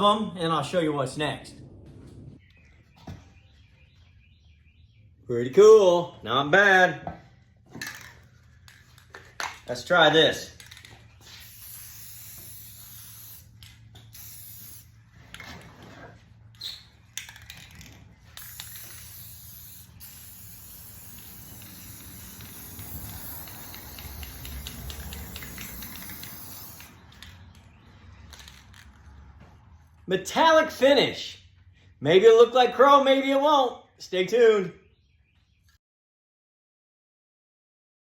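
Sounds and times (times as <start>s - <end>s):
spray paint can hissing: 10.6s - 15.1s, 18.2s - 27.4s.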